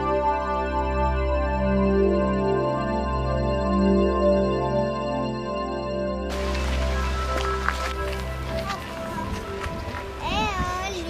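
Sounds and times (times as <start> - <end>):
soft synthesizer chords: 0.0 - 11.0.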